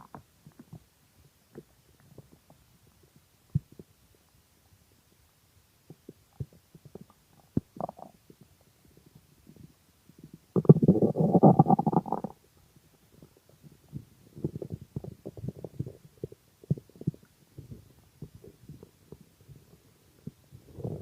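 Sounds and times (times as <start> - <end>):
stomach growling: 5.9 - 12.5, 13.1 - 21.0.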